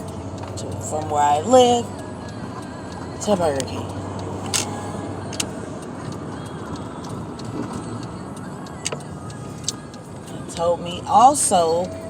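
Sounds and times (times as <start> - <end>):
car road and engine noise: 0.0 - 12.0
sharp clicks: 3.6 - 10.6.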